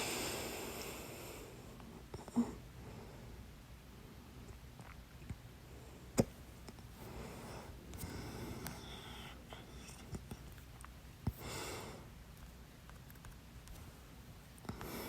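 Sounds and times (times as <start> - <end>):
person breathing: 0.0 - 3.4, 7.0 - 10.2, 11.3 - 12.1, 14.7 - 15.0.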